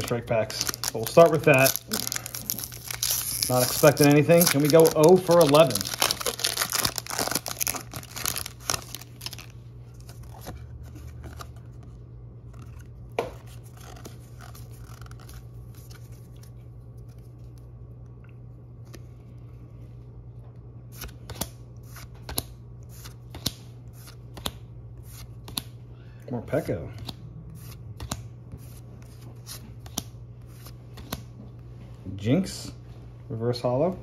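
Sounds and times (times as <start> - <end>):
foil pack crinkling: 0.0 - 11.6
trading cards sliding and snapping: 20.9 - 25.8, 27.0 - 31.3.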